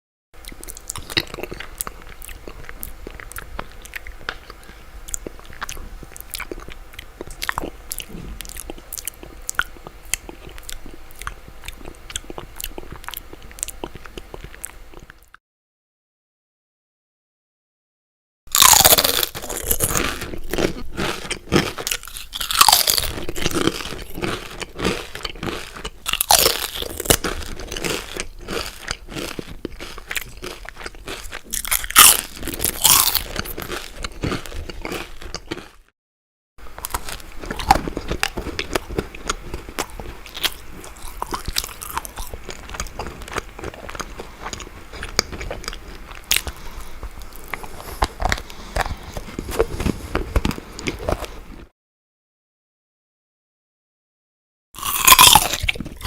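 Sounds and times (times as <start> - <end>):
crackly chewing: 0.4 - 15.4, 18.5 - 35.9, 36.6 - 51.7, 54.8 - 56.0
crisp chip bites: 18.5 - 35.9, 36.7 - 46.3
soft crunching of gingerbread: 36.7 - 51.7.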